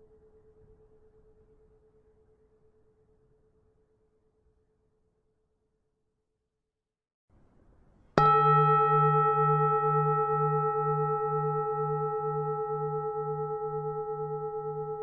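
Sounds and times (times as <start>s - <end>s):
temple bell ringing: 8.2s - 15.0s.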